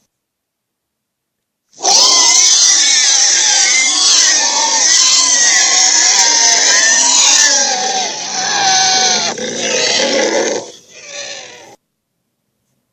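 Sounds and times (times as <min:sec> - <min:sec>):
dragon roar: 0:01.8 - 0:11.8.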